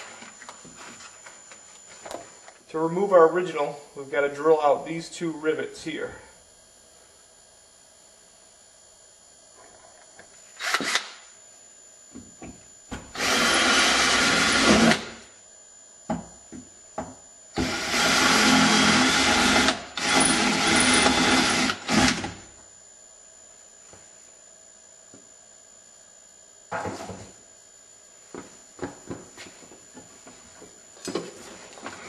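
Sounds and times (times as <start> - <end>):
power drill drilling metal: 10.6 - 11.1, 13.2 - 15.2, 17.6 - 22.4.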